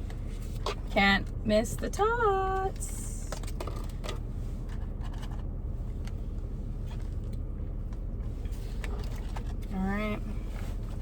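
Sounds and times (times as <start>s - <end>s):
faint clicks and rustles: 2.5s - 11.0s.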